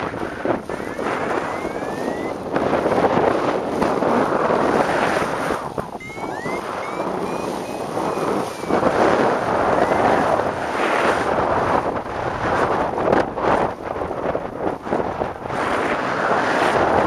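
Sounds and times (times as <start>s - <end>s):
wind buffeting microphone: 0.0s - 17.0s
thin whistling tones: 1.4s - 2.4s, 6.0s - 9.0s, 9.7s - 10.3s.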